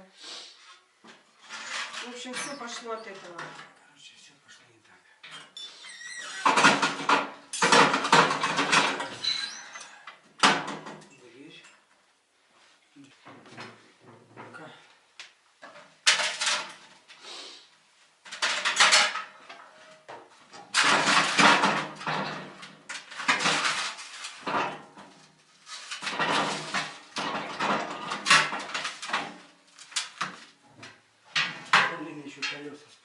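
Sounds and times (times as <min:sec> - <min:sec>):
metal parts clattering and scraping: 0:01.4 - 0:03.7, 0:06.4 - 0:10.0, 0:15.6 - 0:16.9, 0:18.3 - 0:30.5.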